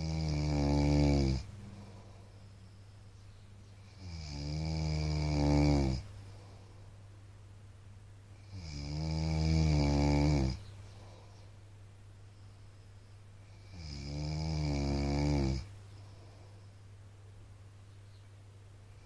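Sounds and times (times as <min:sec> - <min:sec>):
man snoring: 0:00.0 - 0:01.5, 0:04.0 - 0:06.1, 0:08.4 - 0:10.7, 0:13.5 - 0:15.7.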